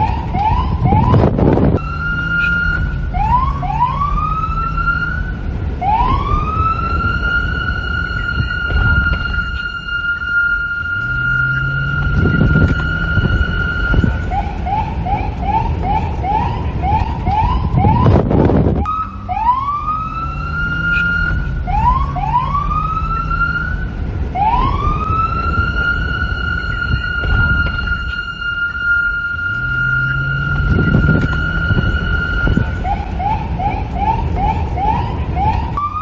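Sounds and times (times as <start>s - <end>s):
low rumbling wind noise: 0.0s - 36.0s
police siren: 0.0s - 36.0s.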